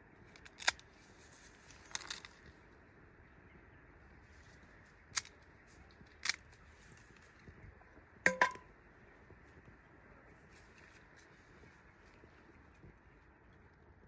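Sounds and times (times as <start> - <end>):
cooking utensils knocking: 8.3 - 8.6.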